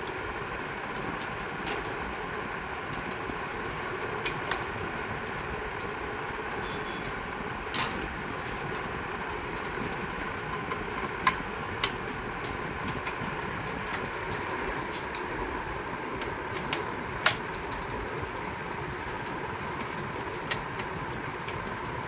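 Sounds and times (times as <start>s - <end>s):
steady whirring hum: 0.0s - 22.0s
computer parts clicking and tapping: 16.2s - 17.6s, 19.8s - 21.7s.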